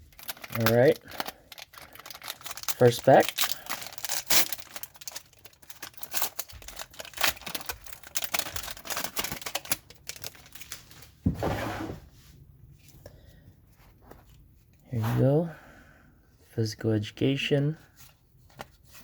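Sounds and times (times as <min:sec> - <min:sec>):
plastic wrapper crinkling: 0:00.0 - 0:11.1.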